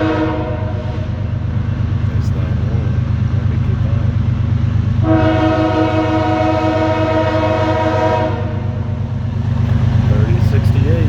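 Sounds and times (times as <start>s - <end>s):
locomotive air horn blast: 0.0s - 1.2s, 5.0s - 8.8s
diesel train rumble: 0.0s - 11.0s.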